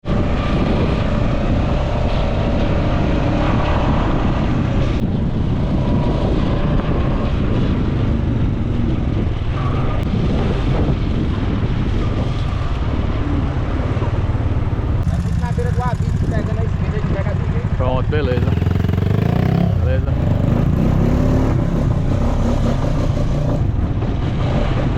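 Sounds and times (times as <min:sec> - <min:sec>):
quad bike engine running: 0:13.2 - 0:24.9.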